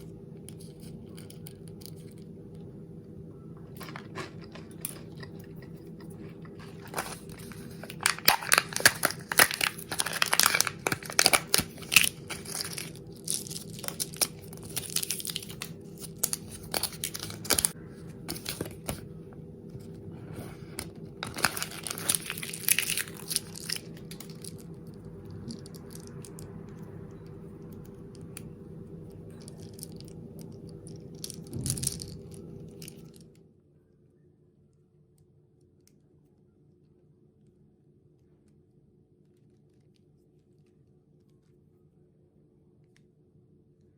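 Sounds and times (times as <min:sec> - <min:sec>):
steady low hum: 0:00.0 - 0:43.9
candy wrapper crinkling: 0:03.6 - 0:19.0, 0:20.3 - 0:28.6, 0:29.2 - 0:33.2.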